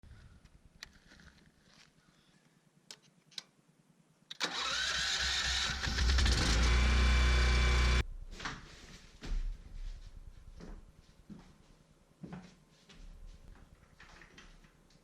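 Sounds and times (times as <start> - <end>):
orbital sander motor: 5.8 - 8.0.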